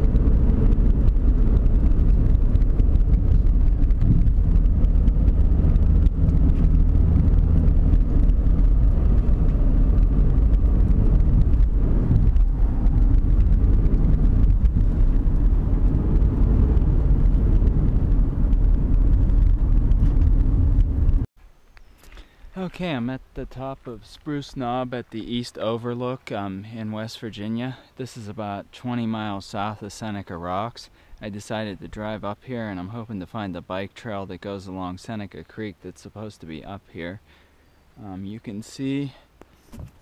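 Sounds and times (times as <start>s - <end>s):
car engine and tyre rumble: 0.0s - 21.3s.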